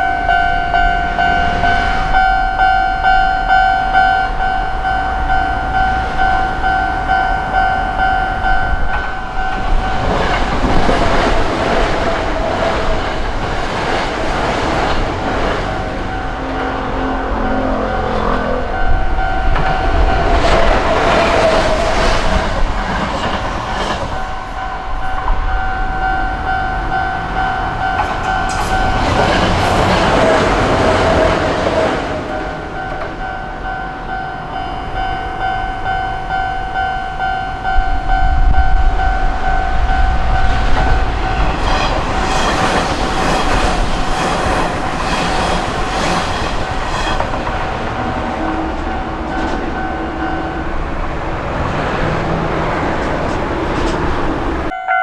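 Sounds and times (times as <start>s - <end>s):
wheels clicking over rail joints: 0.0s - 54.8s
electric trains passing: 0.0s - 55.0s
level-crossing alarm ringing: 0.0s - 55.0s.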